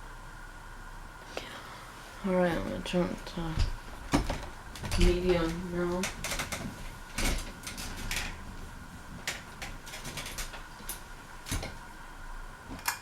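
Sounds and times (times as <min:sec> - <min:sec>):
ceiling fan humming: 0:00.0 - 0:13.0
sharp clicks and knocks: 0:03.5 - 0:08.4, 0:09.2 - 0:11.8.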